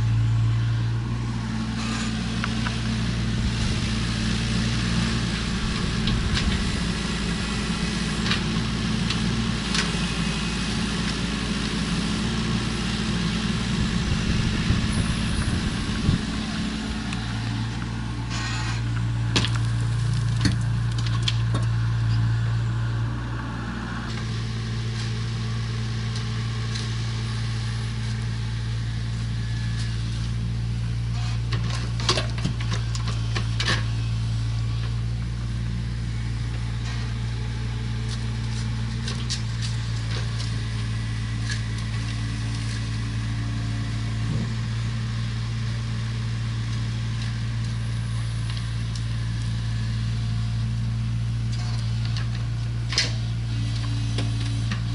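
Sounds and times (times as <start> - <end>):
excavator diesel engine running: 0.0 - 54.9.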